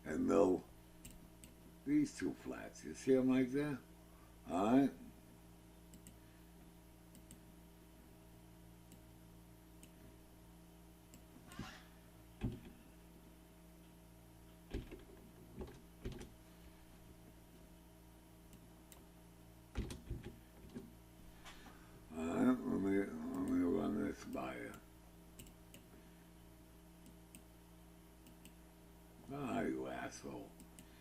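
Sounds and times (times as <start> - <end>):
low electrical hum: 0.0 - 31.0
computer mouse clicks: 5.9 - 6.2, 7.1 - 7.4, 25.4 - 25.9, 27.0 - 27.5, 28.2 - 28.6, 30.6 - 30.9.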